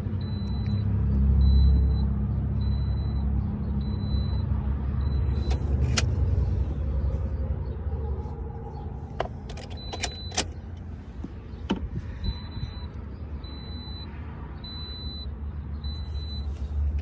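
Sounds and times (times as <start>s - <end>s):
high-pitched electronic beep: 2.6s - 5.5s, 12.3s - 14.1s
sharp clicks: 9.2s - 10.8s.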